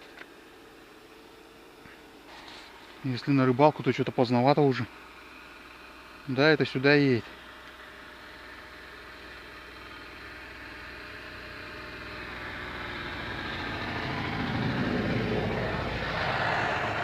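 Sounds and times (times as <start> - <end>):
snowmobile engine passing: 10.6 - 17.0.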